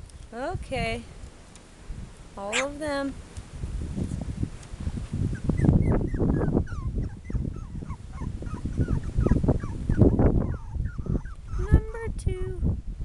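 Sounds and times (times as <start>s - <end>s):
puppies whimpering and squeaking: 2.5s - 2.8s, 5.3s - 11.9s.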